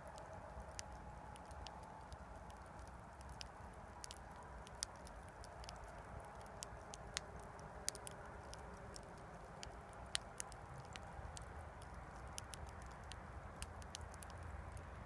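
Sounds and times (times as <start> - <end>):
burning wood crackling and popping: 0.0 - 15.0
low rumble of flames: 0.0 - 15.0.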